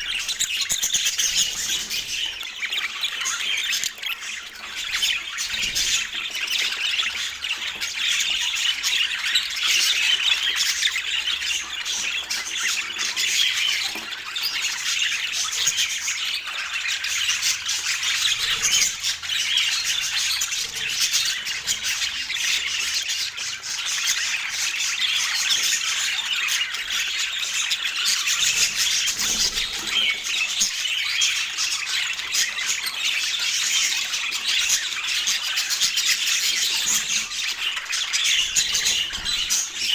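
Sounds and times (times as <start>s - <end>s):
budgerigar warbling and chattering: 25.2s - 39.9s.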